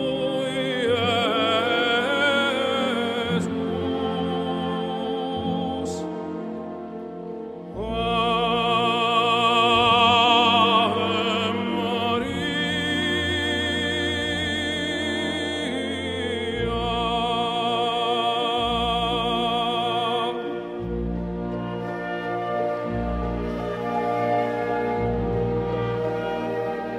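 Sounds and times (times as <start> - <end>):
operatic voice singing: 0.0 - 6.7, 7.7 - 21.4
orchestral accompaniment: 0.0 - 26.9.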